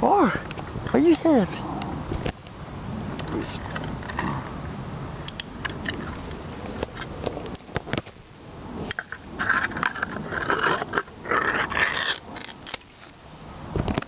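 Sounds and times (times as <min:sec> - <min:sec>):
rough animal sounds: 0:09.0 - 0:12.8.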